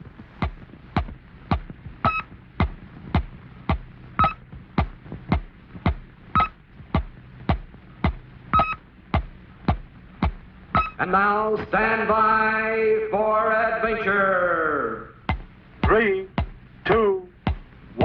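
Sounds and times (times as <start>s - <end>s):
low hum: 0.0s - 18.0s
train of sharp electronic clicks: 0.4s - 11.0s
short high beep: 10.8s - 11.0s.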